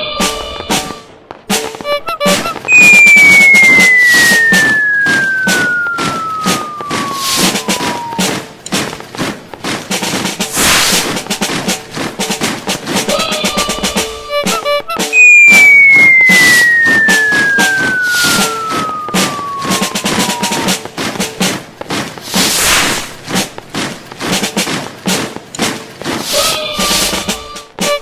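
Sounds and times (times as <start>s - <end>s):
rattle of clicks and pops: 1.3s - 13.1s
whistle gliding down in pitch: 1.8s - 8.5s, 14.3s - 21.0s.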